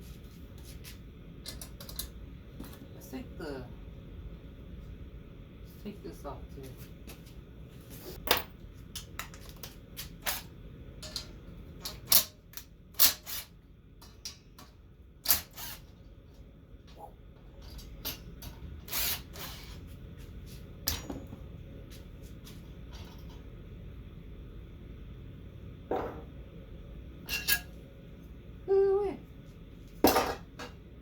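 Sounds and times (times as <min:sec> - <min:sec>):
hand tools clanking on metal: 0:27.3 - 0:27.7.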